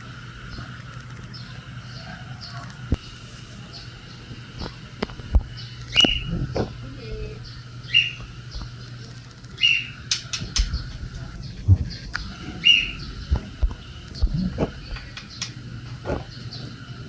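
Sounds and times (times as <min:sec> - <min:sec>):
low steady hum: 0:00.0 - 0:17.0
bird chirping: 0:05.4 - 0:17.0.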